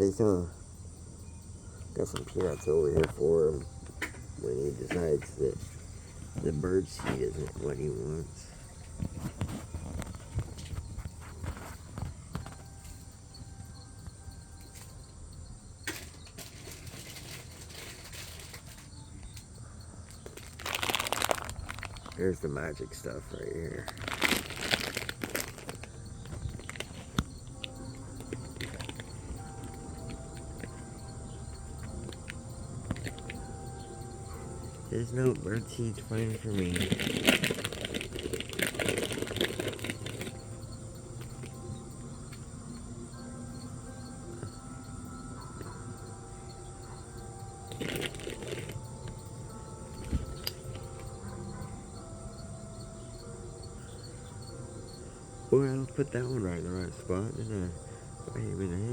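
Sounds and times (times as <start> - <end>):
crackling rustle: 0.0 - 58.9
insects chirping: 0.0 - 58.9
low outdoor background hum: 0.0 - 58.9
bag crinkling: 20.2 - 22.4, 23.3 - 34.1, 34.7 - 41.6, 47.7 - 51.1.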